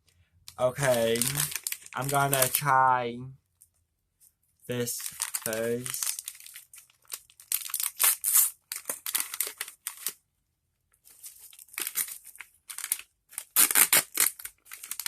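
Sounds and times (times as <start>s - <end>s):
plastic bag crinkling: 0.5s - 2.8s, 4.7s - 10.2s, 11.0s - 15.0s.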